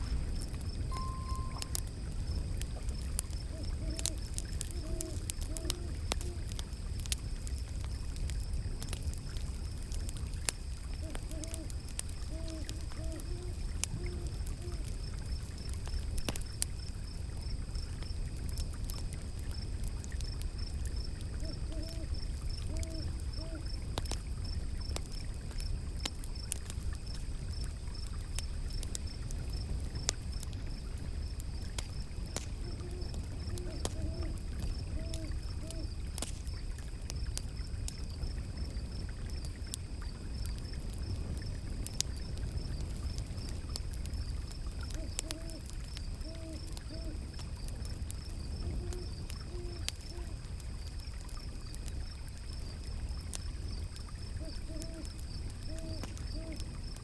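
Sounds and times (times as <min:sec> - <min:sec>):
wood fire crackling: 0:00.0 - 0:57.0
owl hooting: 0:00.9 - 0:01.8, 0:03.5 - 0:06.4, 0:11.0 - 0:14.8, 0:21.4 - 0:22.1, 0:22.7 - 0:23.6, 0:32.7 - 0:35.9, 0:45.0 - 0:45.6, 0:46.2 - 0:47.2, 0:48.7 - 0:50.3, 0:54.4 - 0:55.1, 0:55.7 - 0:56.7.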